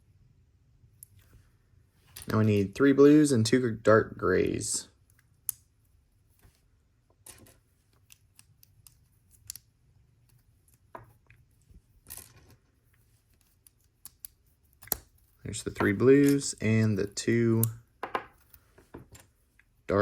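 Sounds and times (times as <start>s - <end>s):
plastic pieces clicking: 7.2s - 9.7s.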